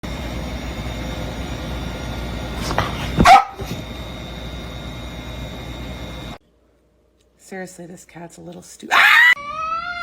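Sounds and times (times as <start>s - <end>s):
background hum and hiss: 0.0s - 9.4s
dog barking: 3.2s - 3.7s.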